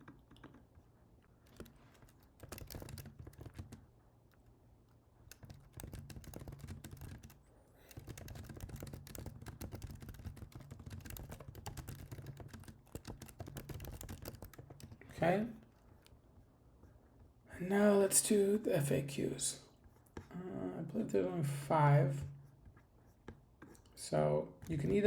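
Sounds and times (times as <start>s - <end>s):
computer keyboard typing: 1.4s - 4.5s, 5.2s - 16.2s, 24.6s - 25.0s.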